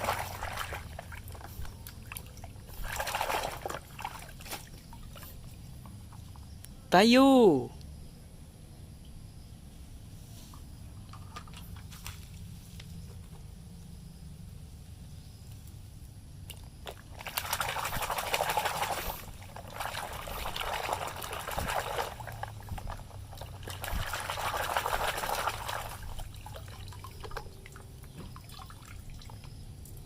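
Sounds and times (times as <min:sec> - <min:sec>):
water pouring: 0:00.0 - 0:05.2, 0:16.9 - 0:29.6.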